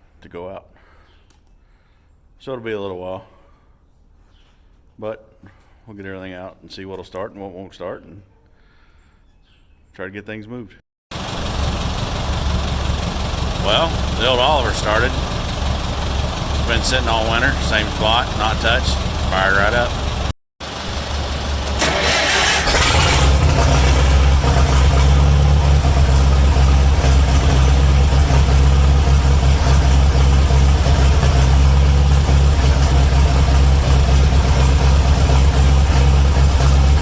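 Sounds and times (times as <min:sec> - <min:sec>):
engine starting and idling: 0:11.1 - 0:37.0.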